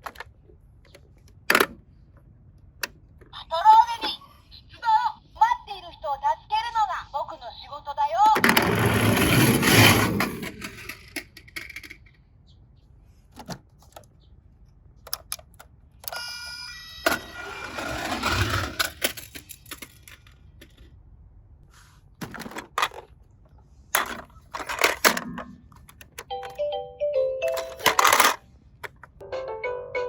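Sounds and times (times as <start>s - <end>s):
toy cars clattering on plastic: 8.3s - 12.2s, 17.1s - 21.0s, 22.2s - 23.2s, 24.0s - 26.3s, 27.5s - 29.2s.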